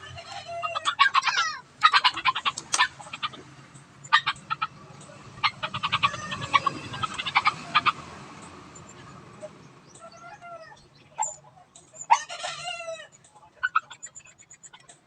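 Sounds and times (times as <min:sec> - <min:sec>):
chicken squawking call: 0:00.0 - 0:03.4, 0:05.4 - 0:08.0, 0:12.0 - 0:14.3
chickens clucking: 0:00.0 - 0:15.0.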